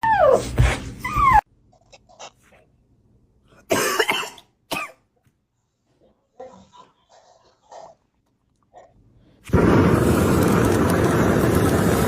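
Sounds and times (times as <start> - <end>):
creature coughing: 3.7 - 5.0.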